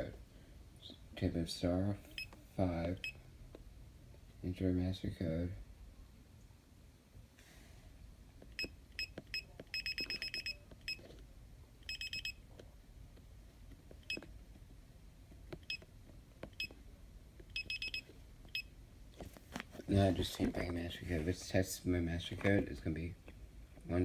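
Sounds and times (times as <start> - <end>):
alarm keypad beeping: 9.0 - 11.0, 11.9 - 12.4, 17.5 - 18.7.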